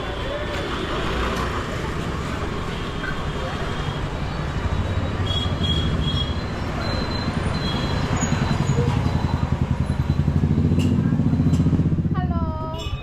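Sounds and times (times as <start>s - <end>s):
vehicle engine throbbing: 4.0s - 12.8s.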